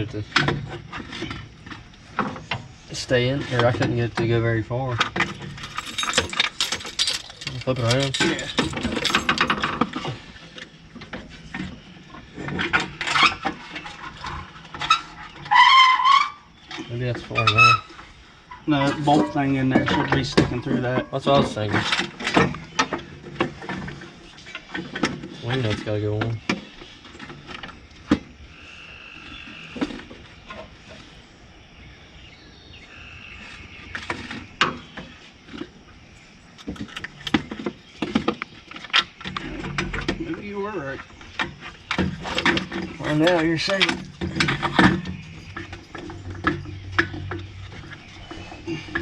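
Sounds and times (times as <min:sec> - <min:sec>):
metal parts knocking and clinking: 0:05.0 - 0:10.1, 0:36.6 - 0:37.7, 0:41.9 - 0:49.0.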